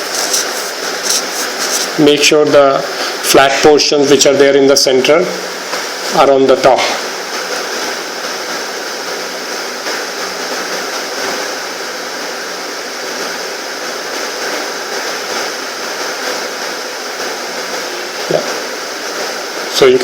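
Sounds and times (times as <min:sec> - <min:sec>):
steady rushing noise: 0:00.0 - 0:02.2.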